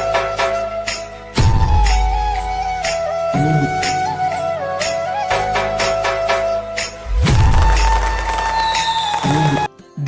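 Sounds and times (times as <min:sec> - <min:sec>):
indian-style music with percussion: 0:07.2 - 0:09.7.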